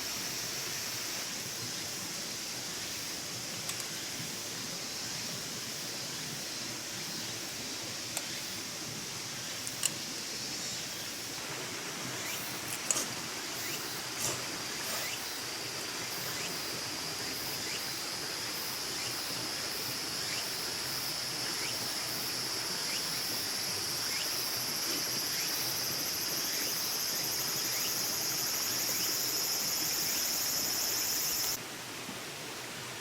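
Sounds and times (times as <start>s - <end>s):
insects buzzing: 0.0s - 31.6s
faint ticks: 8.1s - 8.4s.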